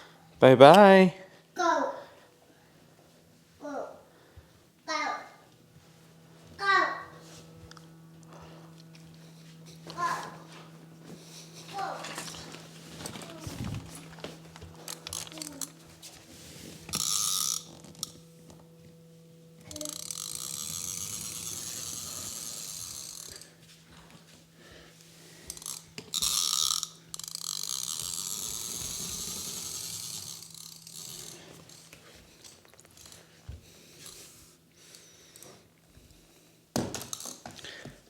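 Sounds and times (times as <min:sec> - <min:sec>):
toy gears whirring: 0:11.3 - 0:18.3, 0:19.6 - 0:23.6, 0:25.3 - 0:33.3, 0:36.8 - 0:37.6
toy gears ratcheting: 0:14.8 - 0:15.8, 0:16.9 - 0:18.2, 0:19.6 - 0:23.5, 0:25.4 - 0:33.2, 0:37.0 - 0:37.5.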